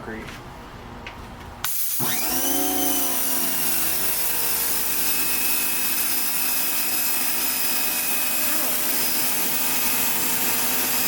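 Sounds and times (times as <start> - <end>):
pressure washer pump whine: 1.6 - 11.0
water jet hissing on concrete: 1.7 - 2.2.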